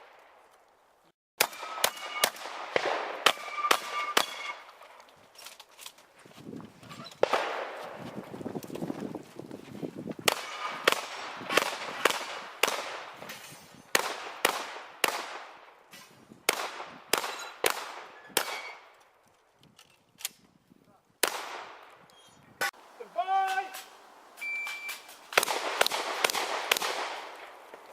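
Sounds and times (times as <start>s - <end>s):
shotgun shots with echo: 1.4s - 4.6s, 7.2s - 8.0s, 10.3s - 13.2s, 13.9s - 15.6s, 16.5s - 18.8s, 25.3s - 27.6s.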